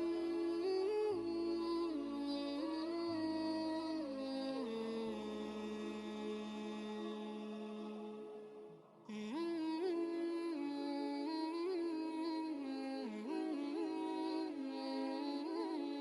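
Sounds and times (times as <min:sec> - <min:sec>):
ornamented melody over drone: 0:00.0 - 0:11.8.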